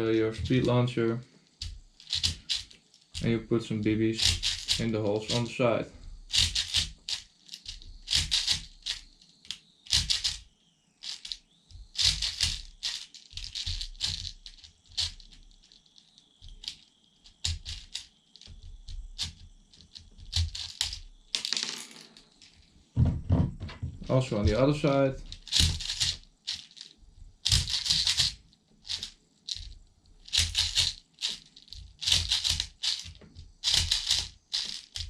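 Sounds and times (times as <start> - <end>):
plastic pellets rattling and clicking: 1.5 - 3.4, 4.1 - 5.5, 11.0 - 22.6, 24.4 - 35.0.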